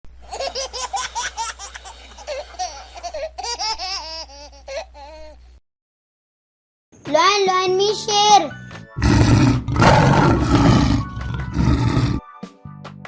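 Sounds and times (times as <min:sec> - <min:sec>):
baby giggling: 0:00.2 - 0:05.4.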